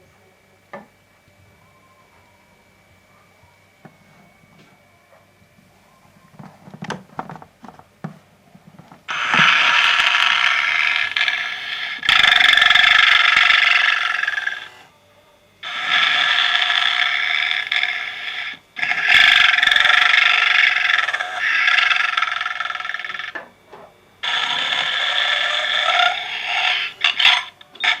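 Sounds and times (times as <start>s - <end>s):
toy snoring through speaker: 9.1s - 14.9s, 15.6s - 23.4s, 24.2s - 28.0s
toy clicks: 15.6s - 23.4s, 24.2s - 28.0s.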